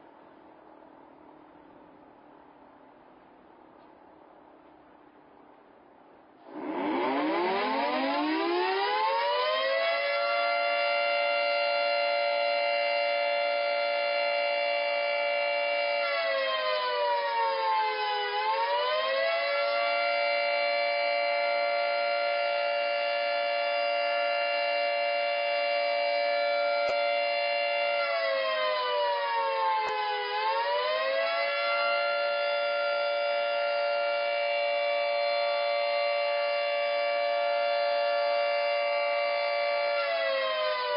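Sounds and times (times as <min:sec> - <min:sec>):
warning siren wailing: 0:06.4 - 0:40.9.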